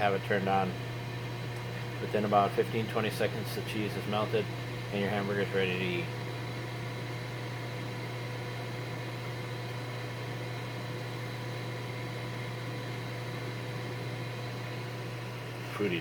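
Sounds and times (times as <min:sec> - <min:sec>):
grill fan humming: 0:00.0 - 0:16.0.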